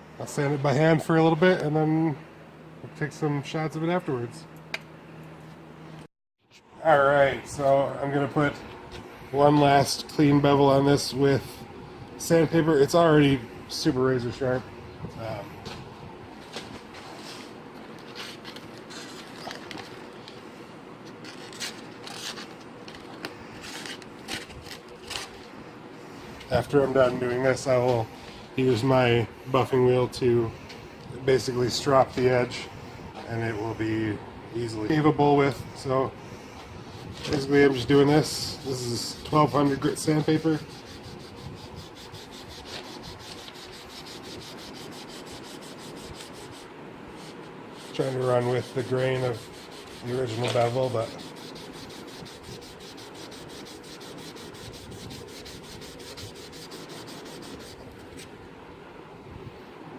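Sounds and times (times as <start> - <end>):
faint steady hum: 0.0 - 59.9
knife scraping on sandpaper: 37.0 - 58.3.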